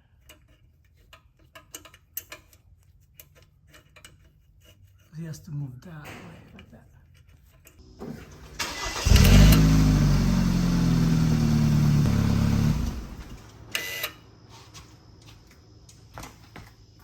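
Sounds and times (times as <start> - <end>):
car engine running: 7.9 - 13.4.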